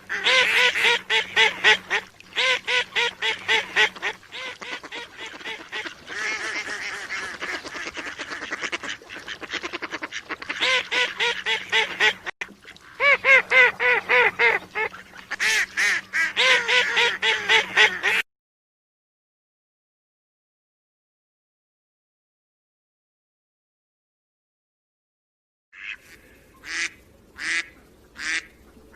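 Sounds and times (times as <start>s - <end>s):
ducks quacking: 0.0s - 18.2s, 25.8s - 28.9s
faint steady hum: 0.0s - 18.2s, 25.8s - 28.9s.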